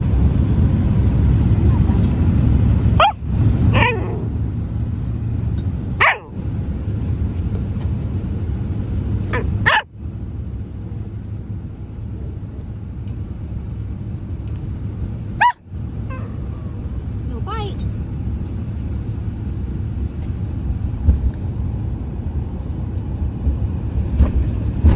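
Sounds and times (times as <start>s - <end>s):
low rumble: 0.0s - 24.9s
puppy barking: 2.9s - 4.4s, 6.0s - 6.4s, 9.3s - 9.9s, 15.4s - 16.4s.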